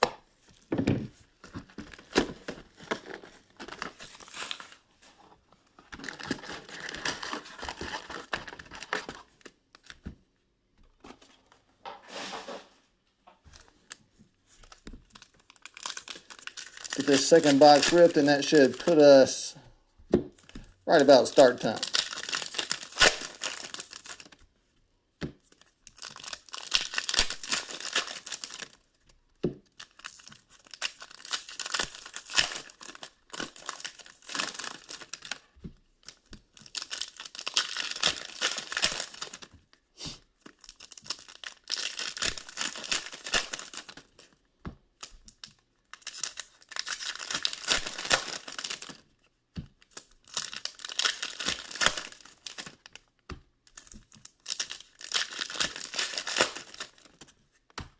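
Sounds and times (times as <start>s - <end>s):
card pack wrappers tearing: 5.9s - 9.9s, 14.6s - 19.5s, 20.9s - 24.4s, 25.5s - 28.8s, 29.8s - 35.4s, 36.0s - 39.5s, 40.4s - 44.3s, 45.0s - 49.0s, 49.8s - 53.0s, 53.7s - 57.3s.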